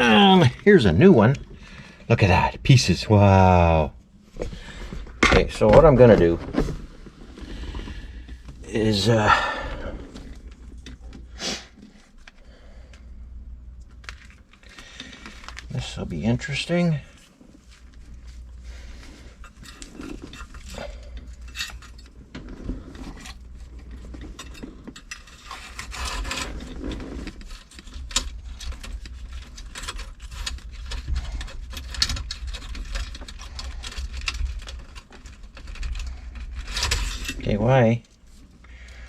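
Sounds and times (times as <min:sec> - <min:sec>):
low steady hum: 0:00.0 - 0:39.0
small metal parts clicking and rattling: 0:19.1 - 0:39.0.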